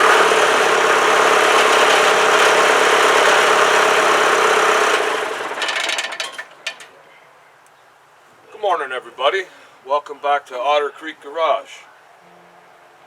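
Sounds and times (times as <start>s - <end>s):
diesel tractor engine running: 0.0s - 6.9s
engine rattling as it stops: 0.0s - 6.9s.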